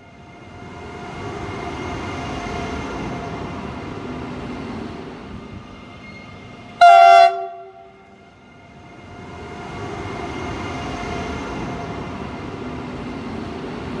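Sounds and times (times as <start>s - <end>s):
train running rumble: 0.1s - 14.0s
train horn blast: 6.8s - 8.2s.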